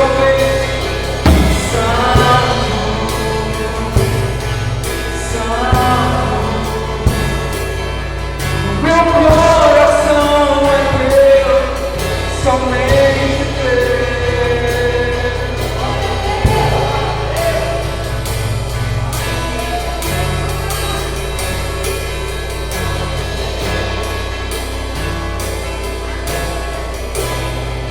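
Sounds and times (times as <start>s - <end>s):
man singing: 0.0s - 18.1s
acoustic guitar: 0.0s - 27.9s
drum kit with cymbal hits: 0.0s - 27.9s.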